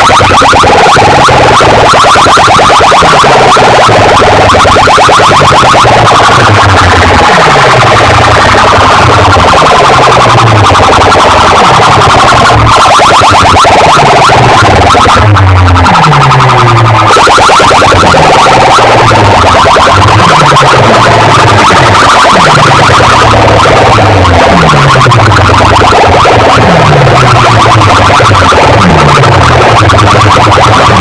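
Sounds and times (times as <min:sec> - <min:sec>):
distorted electronic dance music: 0:00.0 - 0:31.0.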